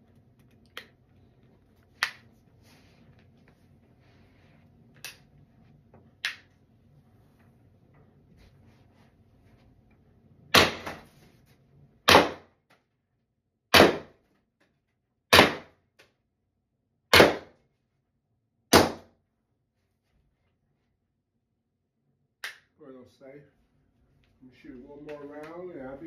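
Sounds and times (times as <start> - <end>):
launcher firing sharp pops: 12.1 - 12.5, 13.7 - 14.1, 15.3 - 15.7, 17.1 - 17.5, 18.7 - 19.0.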